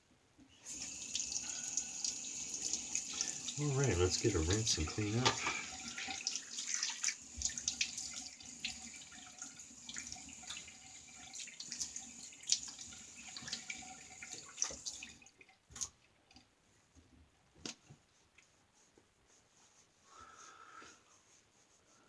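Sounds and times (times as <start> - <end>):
tap water running into sink: 0.7 - 16.4.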